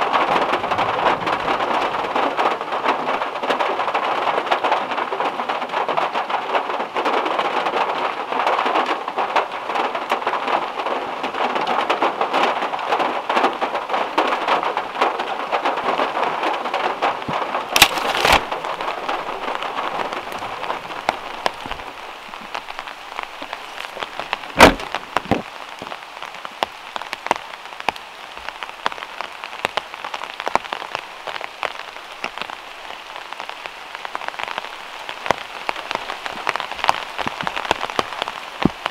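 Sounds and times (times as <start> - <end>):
heavy rain on a metal roof: 0.0 - 38.9
loud sharp knocks: 24.6 - 25.4.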